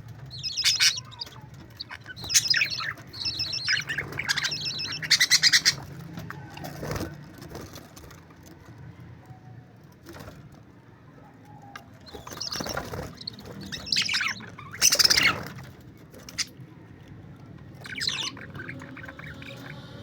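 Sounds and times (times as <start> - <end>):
parakeets chirping and squawking: 0.0 - 8.1, 12.0 - 17.0, 17.7 - 20.0.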